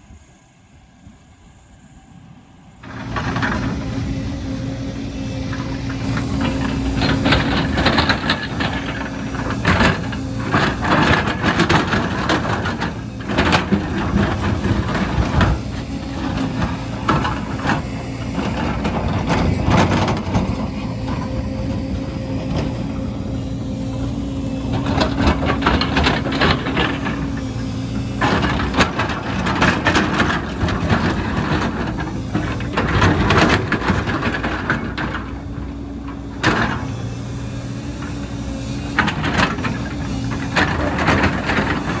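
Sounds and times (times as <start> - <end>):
excavator engine running: 1.0 - 42.0
rock and soil clattering: 5.2 - 35.5, 38.9 - 42.0.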